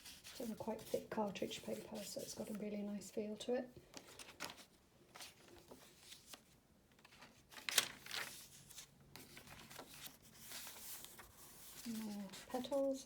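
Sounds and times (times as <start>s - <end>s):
paper pages rustling: 0.0s - 2.7s, 3.9s - 13.0s
page turning: 3.9s - 12.8s.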